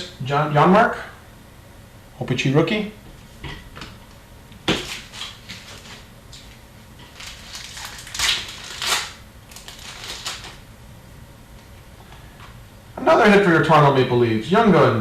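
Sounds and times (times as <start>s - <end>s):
card wrappers crinkling and rustling: 4.6s - 10.6s.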